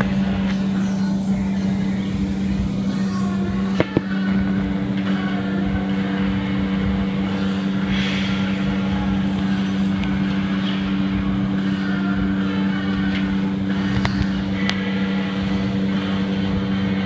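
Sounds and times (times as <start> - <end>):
machine humming: 0.0 - 17.0.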